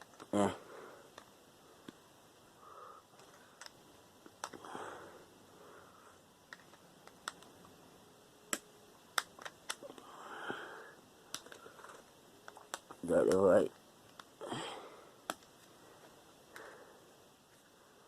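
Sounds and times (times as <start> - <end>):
small plastic parts clicking: 0.0 - 0.3, 3.2 - 4.6, 6.5 - 7.7, 8.5 - 10.0, 11.3 - 13.5, 14.1 - 14.4, 15.2 - 15.6.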